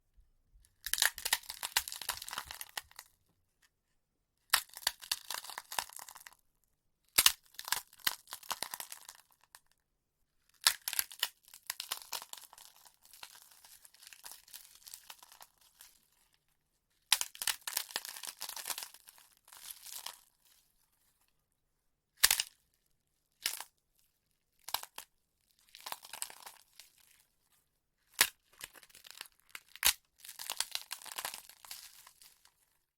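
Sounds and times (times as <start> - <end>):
bone cracking crunches: 0.8 - 3.1, 4.5 - 6.4, 7.2 - 9.2, 10.6 - 15.5, 17.1 - 20.2, 25.7 - 26.8, 28.2 - 32.3.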